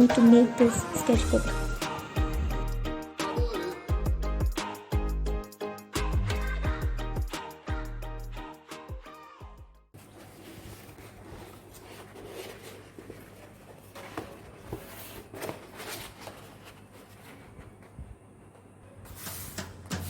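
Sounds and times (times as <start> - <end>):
paper rustling and scraping: 10.0 - 18.0, 19.1 - 20.0.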